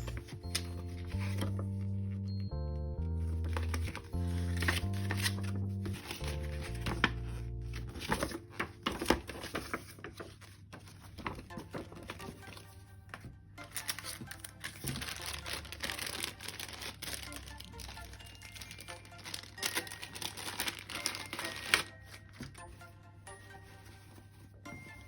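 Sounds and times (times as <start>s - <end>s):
background music: 0.0s - 25.0s
plastic packaging crinkling: 3.3s - 12.6s, 13.6s - 22.6s
sharp plastic crackle: 13.7s - 22.0s.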